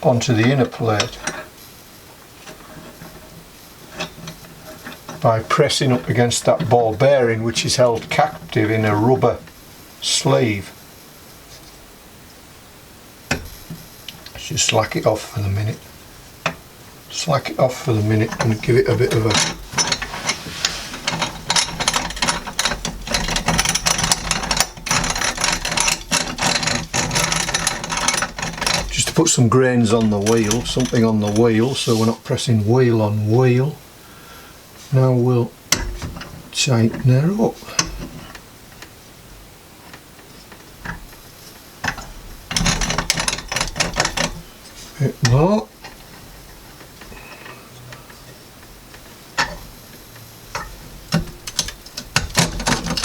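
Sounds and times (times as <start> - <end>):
grain mill clicks and crackles: 13.3 - 32.2, 39.8 - 53.0
grain mill grinding clicks: 17.8 - 31.9.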